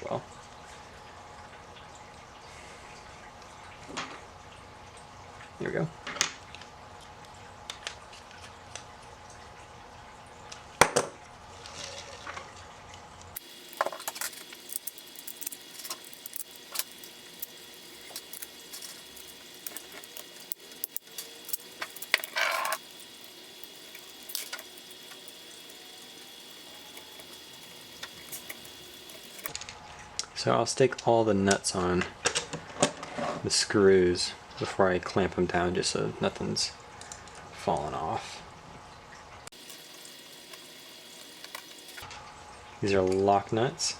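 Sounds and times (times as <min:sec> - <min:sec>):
screws and tools clinking: 0:13.4 - 0:29.5.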